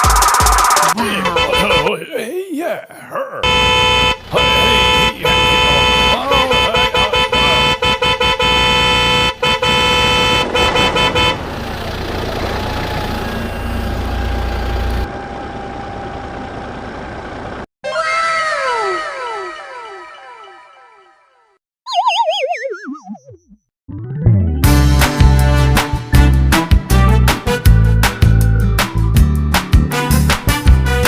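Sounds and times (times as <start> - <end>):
vehicle horn honking: 1.2 - 1.9, 3.4 - 11.5.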